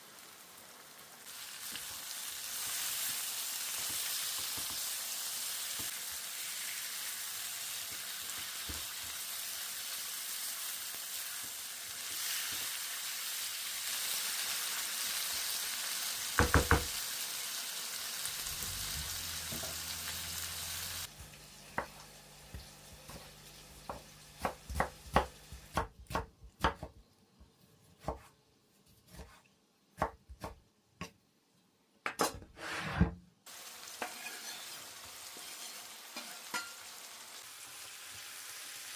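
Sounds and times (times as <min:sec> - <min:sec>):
food sizzling in oil: 0:00.0 - 0:25.8, 0:33.5 - 0:38.9.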